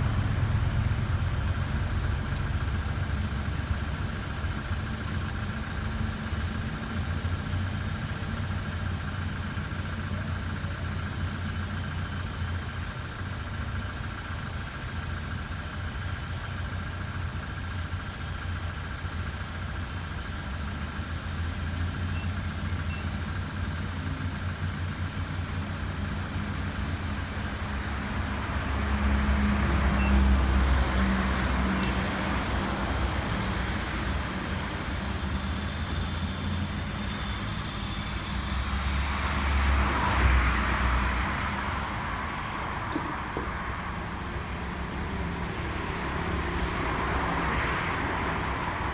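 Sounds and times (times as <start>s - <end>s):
vehicle engine idling: 0.0s - 48.9s.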